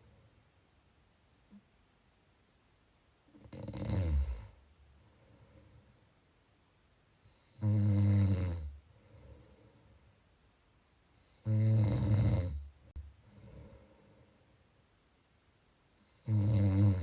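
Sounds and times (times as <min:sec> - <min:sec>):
person snoring: 0:03.4 - 0:04.6, 0:07.3 - 0:09.7, 0:11.2 - 0:12.7, 0:16.0 - 0:17.0.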